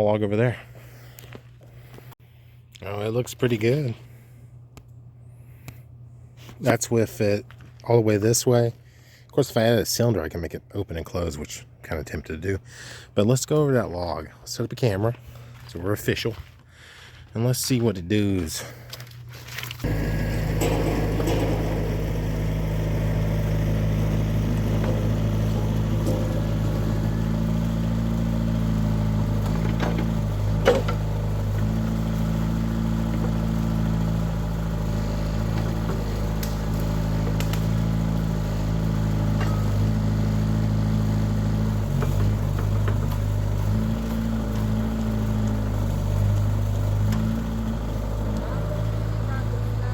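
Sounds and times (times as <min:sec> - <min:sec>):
mini excavator engine running: 0:19.6 - 0:49.9.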